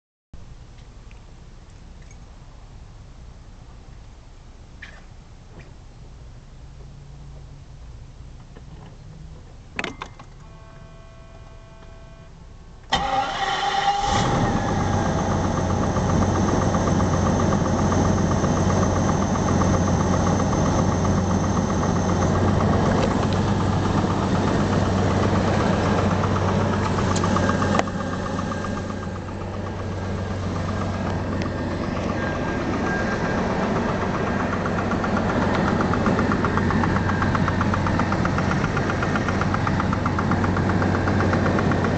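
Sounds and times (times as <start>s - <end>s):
car engine cranking and idling: 0.5s - 41.9s
rhythmic engine knock: 15.1s - 41.9s.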